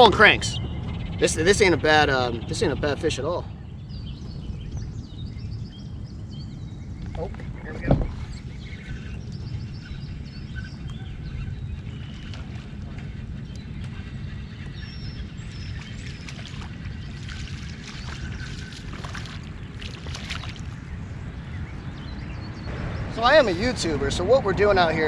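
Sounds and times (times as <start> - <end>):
steady low rumble: 0.0 - 25.0.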